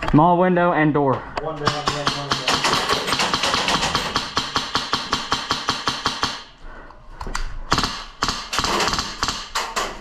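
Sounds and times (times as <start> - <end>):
airsoft rifle firing: 1.7 - 6.5, 7.7 - 10.0.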